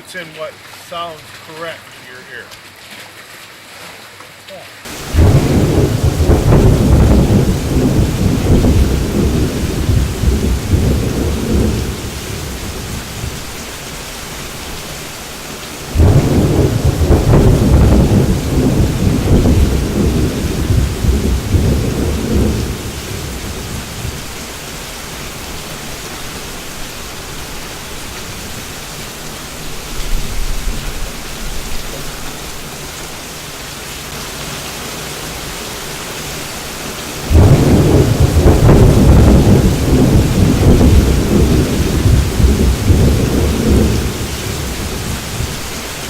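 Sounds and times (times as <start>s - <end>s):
steady rain hiss: 0.0s - 46.0s
rolling thunder rumbles: 4.9s - 13.7s, 15.9s - 24.4s, 37.2s - 46.0s.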